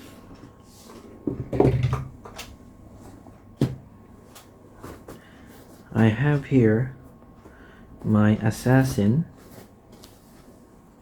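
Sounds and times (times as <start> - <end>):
items knocking on a surface: 1.2 - 2.4, 3.6 - 3.9.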